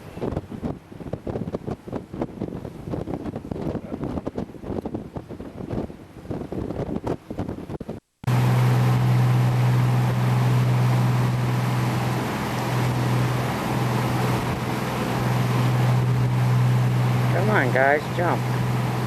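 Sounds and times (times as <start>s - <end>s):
boat engine running: 0.0s - 19.0s
wind noise: 0.0s - 19.0s
water rushing: 8.3s - 19.0s.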